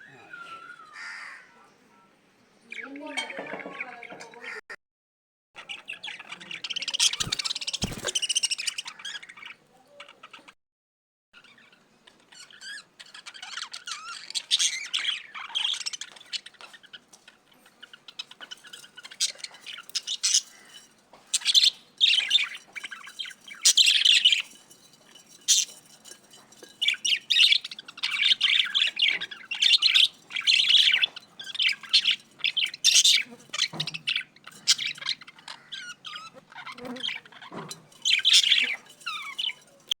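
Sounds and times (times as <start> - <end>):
budgerigars chirping: 26.8 - 39.6.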